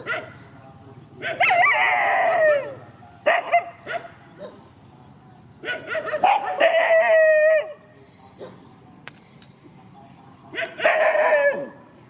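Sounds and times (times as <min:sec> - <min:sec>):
dogs barking: 0:00.0 - 0:00.5, 0:01.2 - 0:04.7, 0:05.6 - 0:07.8, 0:08.4 - 0:08.7, 0:10.5 - 0:11.9
dogs yelping and whining: 0:01.3 - 0:04.6, 0:05.7 - 0:07.8.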